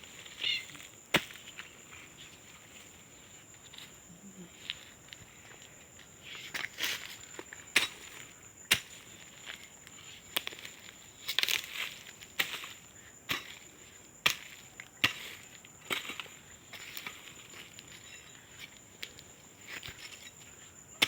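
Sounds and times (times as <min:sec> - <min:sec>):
hoe chopping into soil: 0:01.1 - 0:01.4, 0:07.7 - 0:09.0, 0:12.4 - 0:17.3.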